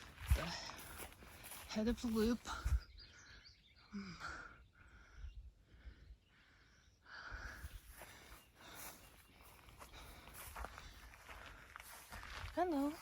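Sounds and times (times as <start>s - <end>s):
soft breathing: 4.0s - 12.2s.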